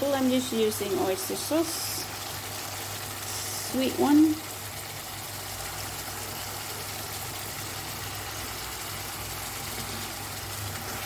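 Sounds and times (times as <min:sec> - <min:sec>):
sauce sizzling in a pan: 0:00.0 - 0:11.0.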